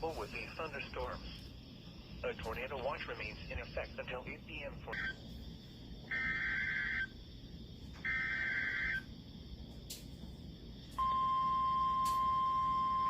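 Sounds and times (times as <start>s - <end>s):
steady alarm tone: 6.0s - 7.3s, 8.0s - 9.2s, 11.0s - 13.0s.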